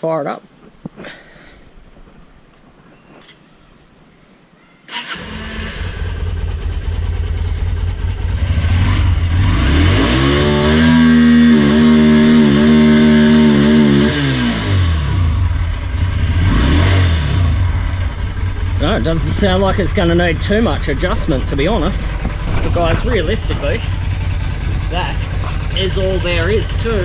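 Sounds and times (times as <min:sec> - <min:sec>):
motorcycle engine revving: 0:04.9 - 0:27.0.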